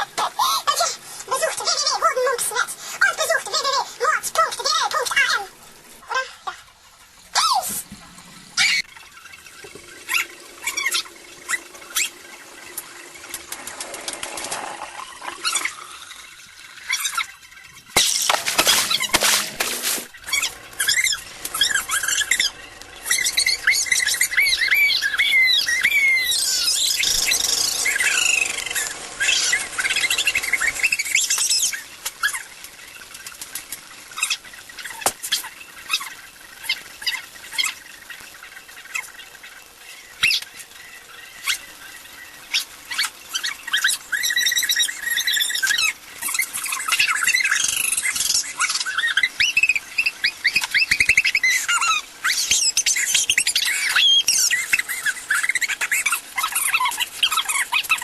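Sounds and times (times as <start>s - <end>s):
high-pitched squeaks and chirps: 8.6s - 12.3s, 15.1s - 32.5s, 34.1s - 58.0s.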